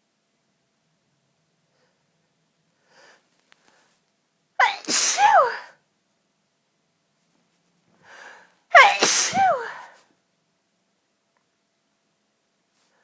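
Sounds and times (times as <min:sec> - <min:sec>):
faint breath: 0:02.8 - 0:04.0, 0:08.0 - 0:08.6
woman sneezing: 0:04.6 - 0:05.8, 0:08.7 - 0:10.0.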